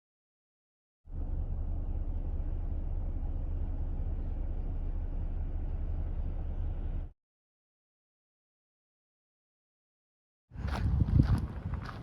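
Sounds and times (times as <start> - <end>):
vehicle rumbling: 1.1 - 7.1, 10.6 - 12.0.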